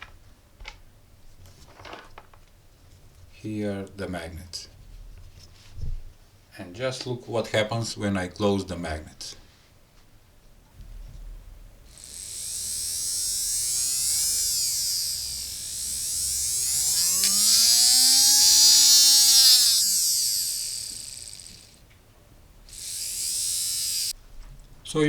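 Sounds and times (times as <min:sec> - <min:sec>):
small motor buzzing whine: 0:11.8 - 0:21.8, 0:22.6 - 0:24.2.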